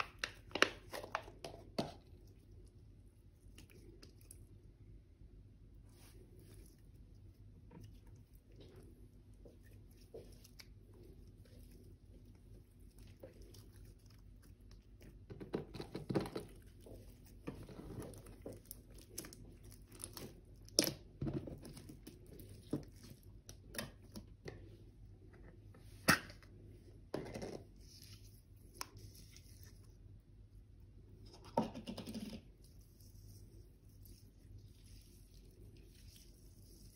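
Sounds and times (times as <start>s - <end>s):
slime squelching and crackling: 5.8s - 24.4s.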